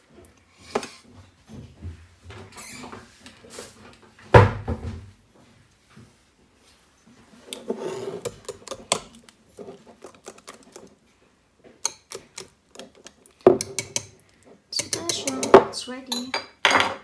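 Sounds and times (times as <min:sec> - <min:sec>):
utensils and dishes clattering: 0:11.8 - 0:17.0.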